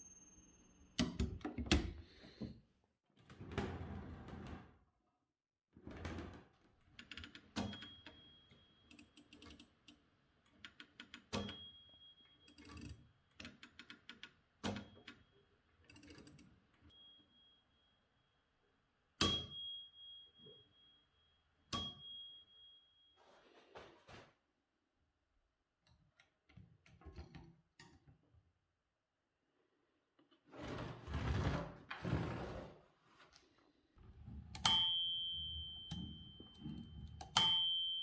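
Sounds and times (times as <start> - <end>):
typewriter bell ding: 0.0 - 0.8, 7.6 - 8.8, 11.4 - 12.9, 14.7 - 15.3, 19.2 - 21.0, 21.8 - 23.1, 34.6 - 38.0.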